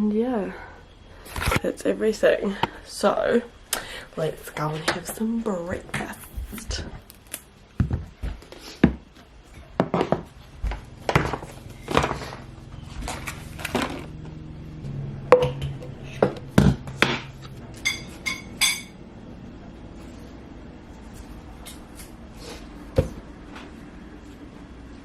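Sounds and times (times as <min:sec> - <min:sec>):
low steady hum: 0:00.0 - 0:25.0
dishes and utensils knocking: 0:15.3 - 0:19.0
crockery clinking: 0:17.8 - 0:19.0.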